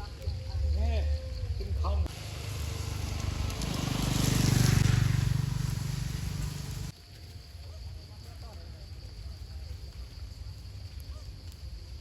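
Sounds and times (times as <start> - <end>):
vehicle engine passing by: 2.0 - 6.9.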